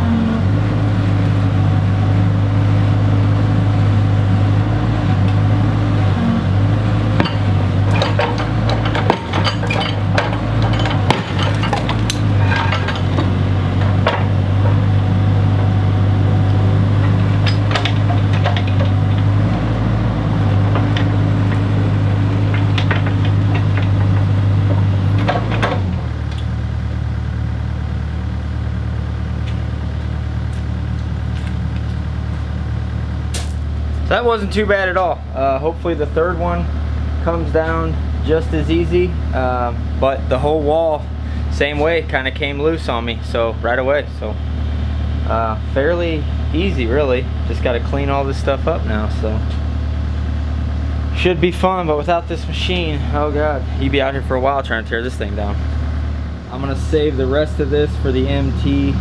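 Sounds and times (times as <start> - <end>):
excavator diesel engine running: 0.0 - 59.0
bricks clinking and falling: 7.2 - 14.3.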